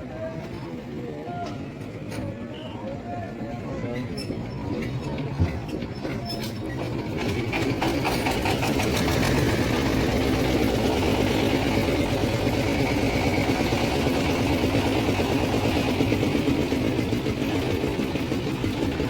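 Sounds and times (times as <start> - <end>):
motor engine running: 7.1 - 19.0.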